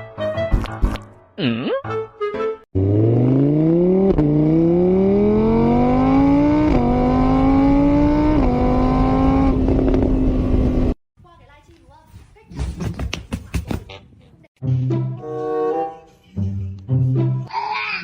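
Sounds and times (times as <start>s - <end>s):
car engine accelerating: 2.8s - 11.0s.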